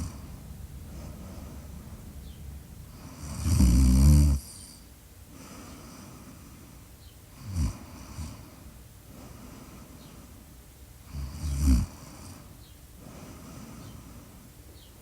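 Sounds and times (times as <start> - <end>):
quiet breathing: 0.0 - 15.0
person snoring: 3.0 - 4.8, 11.1 - 12.4.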